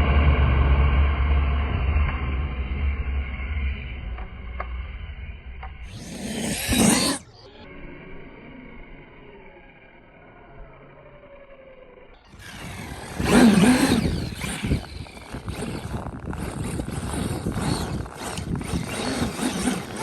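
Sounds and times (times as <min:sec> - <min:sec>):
tyres churning snow: 0:05.9 - 0:07.3, 0:12.3 - 0:20.0
electric motor whine: 0:05.9 - 0:20.0.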